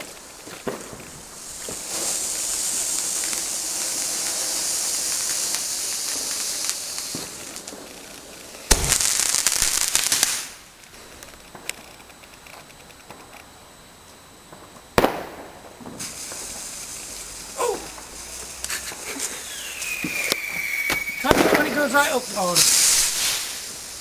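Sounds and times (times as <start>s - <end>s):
firework bang: 0.0s - 7.9s, 8.7s - 10.6s, 15.0s - 24.0s
firework fizzing: 0.0s - 12.0s, 14.9s - 24.0s
firework crackling: 0.0s - 24.0s.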